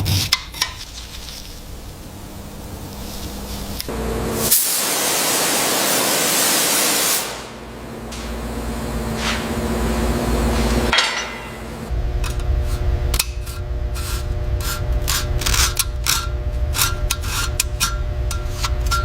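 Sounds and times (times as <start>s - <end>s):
scraping and tapping strokes: 0.0s - 1.8s, 12.2s - 19.0s
low steady rumble: 0.1s - 4.4s, 7.7s - 19.0s
spray hiss: 3.0s - 7.6s.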